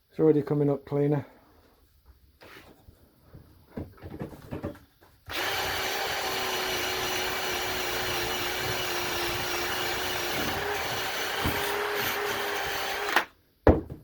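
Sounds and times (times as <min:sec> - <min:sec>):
small power tool whining: 0:05.3 - 0:13.3.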